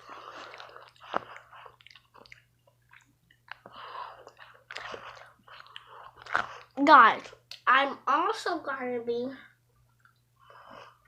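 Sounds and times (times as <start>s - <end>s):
person chewing candy: 0.0s - 7.7s.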